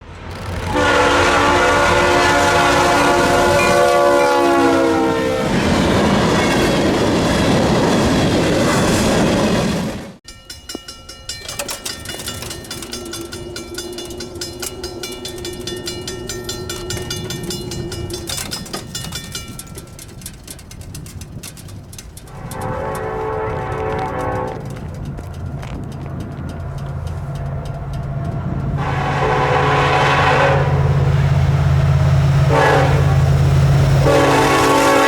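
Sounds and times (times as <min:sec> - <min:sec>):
rail clicks and clanks: 0:00.0 - 0:35.0
train rumbling past: 0:00.0 - 0:35.0
locomotive horn chord: 0:00.6 - 0:05.8, 0:22.3 - 0:24.9, 0:27.3 - 0:35.0.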